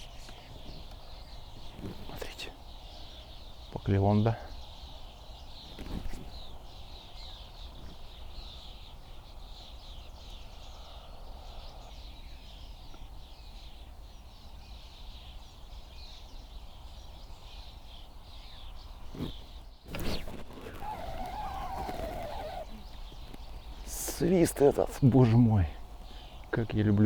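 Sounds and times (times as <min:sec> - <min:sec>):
songbirds chirping: 0:00.0 - 0:27.0.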